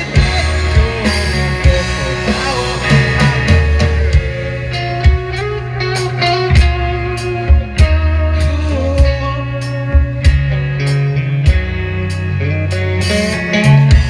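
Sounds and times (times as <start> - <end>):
drum hits: 0.0 - 8.2
guitar melody: 0.0 - 14.0
sustained bass line: 0.0 - 14.0.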